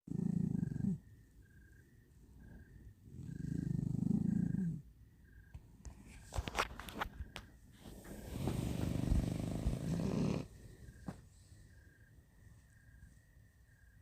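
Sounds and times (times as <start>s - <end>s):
puppy snoring: 0.0s - 1.1s, 2.4s - 4.9s, 7.8s - 11.0s.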